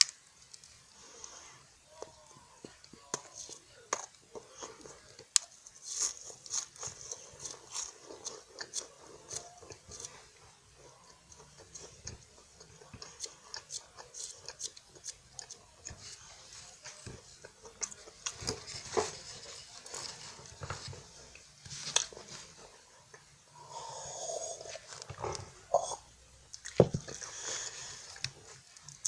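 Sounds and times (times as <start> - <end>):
chewing and crunching biscuit: 0.0 - 23.9, 24.6 - 29.0.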